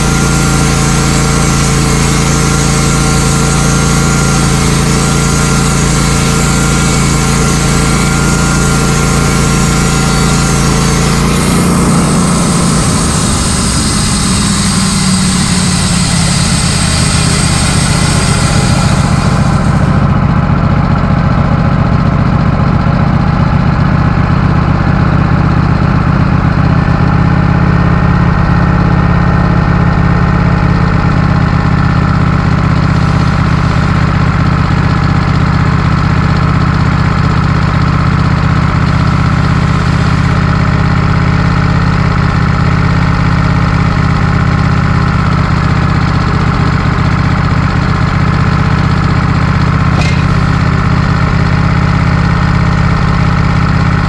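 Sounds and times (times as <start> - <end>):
sawmill engine running: 0.0 - 54.0.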